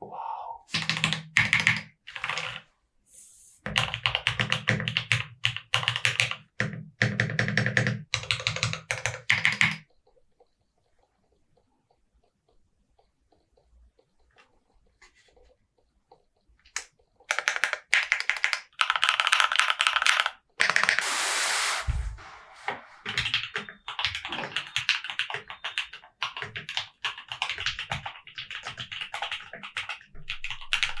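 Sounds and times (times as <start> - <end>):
mechanical keyboard typing: 0.8 - 2.6, 3.7 - 11.2, 16.7 - 21.0, 23.0 - 31.0
loud rushing noise: 21.0 - 23.2
low thump: 21.8 - 23.0.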